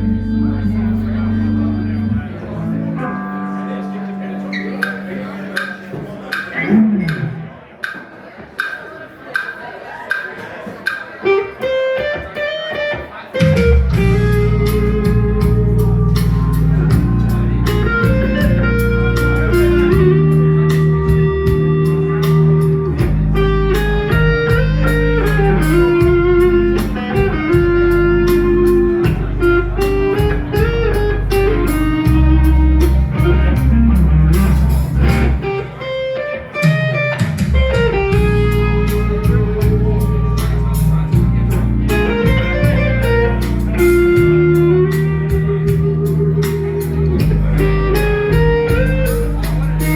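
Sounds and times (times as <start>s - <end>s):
heavy bass line: 0.0s - 7.6s, 13.4s - 49.9s
band playing guitar music: 0.0s - 49.9s
steady drum beat: 12.0s - 35.6s, 36.6s - 49.9s.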